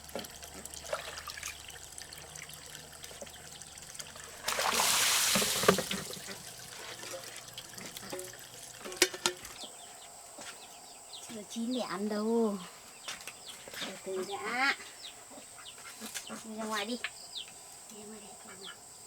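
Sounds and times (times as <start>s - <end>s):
water pouring: 0.0s - 9.5s
small knocks and clinks: 5.6s - 9.7s.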